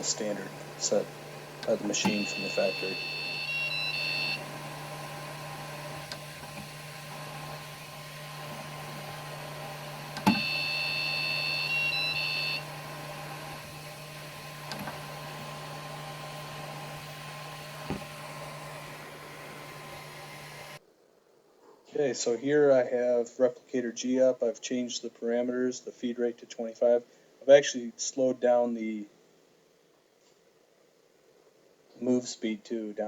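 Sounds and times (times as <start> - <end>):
fan humming: 0.0 - 20.8
stepper motor whining: 0.0 - 20.8
motor click: 1.6 - 4.6, 5.9 - 9.4, 10.1 - 12.6, 14.6 - 15.1.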